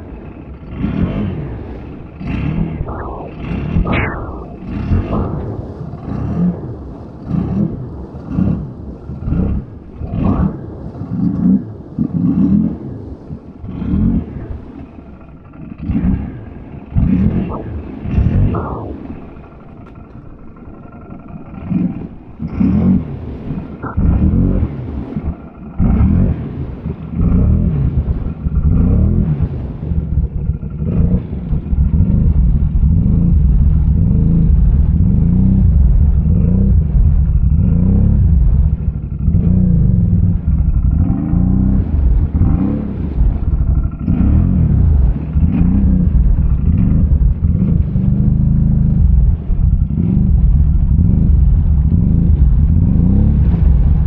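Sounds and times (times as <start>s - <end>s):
atv engine revving: 0.0s - 4.4s, 15.3s - 54.0s.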